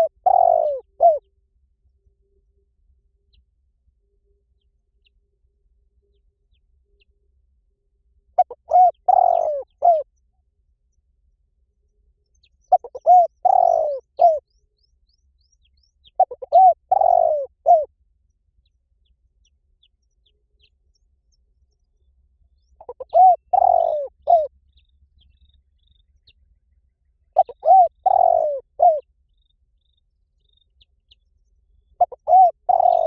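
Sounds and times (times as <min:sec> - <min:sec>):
dove cooing: 0:00.0 - 0:01.2, 0:08.4 - 0:10.1, 0:12.7 - 0:14.4, 0:16.1 - 0:17.9, 0:22.8 - 0:24.5, 0:27.4 - 0:29.1, 0:32.0 - 0:33.0.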